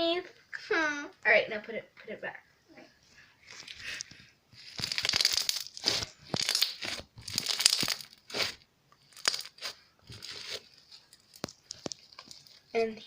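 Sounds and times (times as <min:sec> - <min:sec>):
slime squelching: 0:03.4 - 0:13.0.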